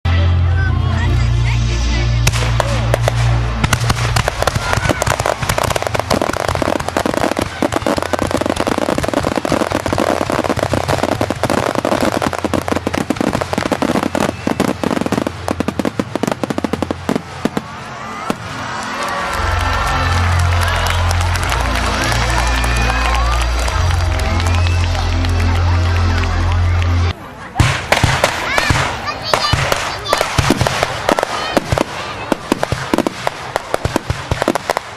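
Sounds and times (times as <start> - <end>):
low steady drone: 0.1 - 4.4, 16.9 - 27.5
fireworks crackling bangs: 2.2 - 19.1, 27.0 - 34.9.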